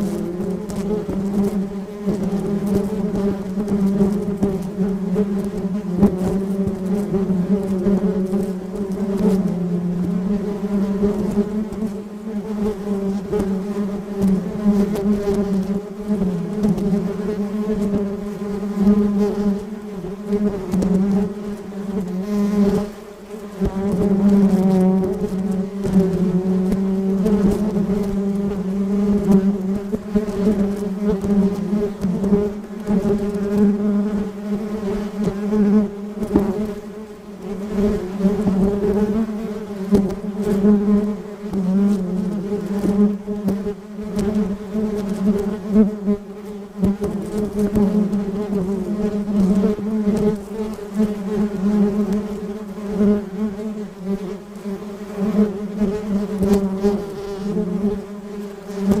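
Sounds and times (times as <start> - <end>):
wasp buzzing: 0.0 - 59.0.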